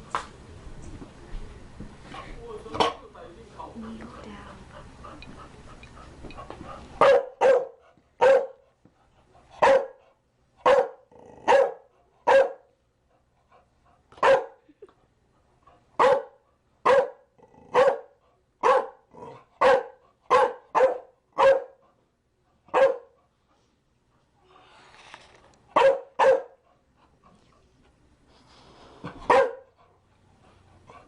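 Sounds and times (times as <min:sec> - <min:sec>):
dog barking: 0:07.0 - 0:08.6, 0:09.6 - 0:10.0, 0:10.6 - 0:12.7, 0:14.2 - 0:14.6, 0:16.0 - 0:19.0, 0:19.6 - 0:21.8, 0:22.7 - 0:23.2, 0:25.8 - 0:26.6, 0:29.3 - 0:29.7.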